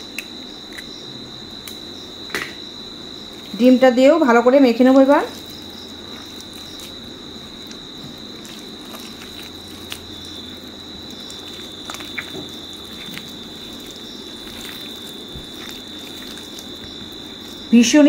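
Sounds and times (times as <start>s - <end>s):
hand kneading food mixture: 3.2s - 18.0s
soft squelches: 5.0s - 17.8s.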